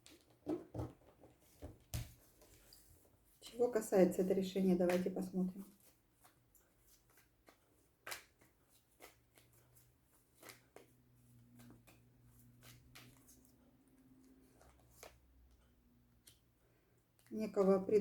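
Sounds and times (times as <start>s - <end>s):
cards clicking and flicking: 7.4s - 9.5s.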